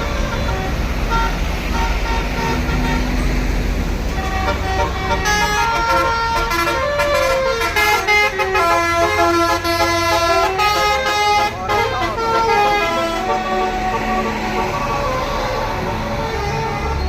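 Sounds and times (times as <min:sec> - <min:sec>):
multi-tone air horn melody: 0:04.1 - 0:17.0.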